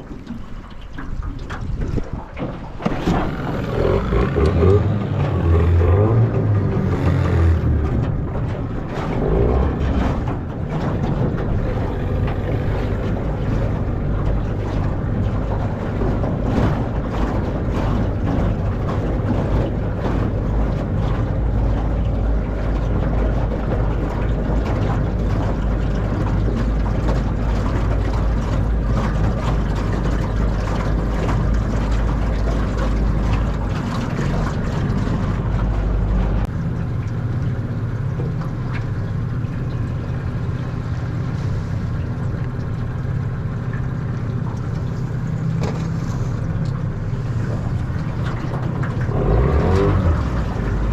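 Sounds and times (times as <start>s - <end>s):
outboard motor running: 0.0s - 50.9s
wind on microphone: 1.2s - 36.5s.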